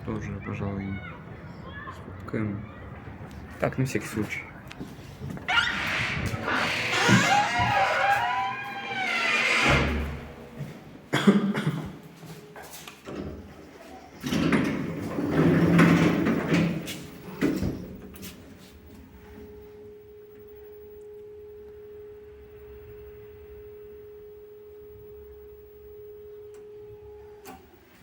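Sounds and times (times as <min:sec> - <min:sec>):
lift doors scraping and creaking: 0:05.1 - 0:10.8, 0:13.6 - 0:17.0
steady single-tone hum: 0:17.4 - 0:28.0.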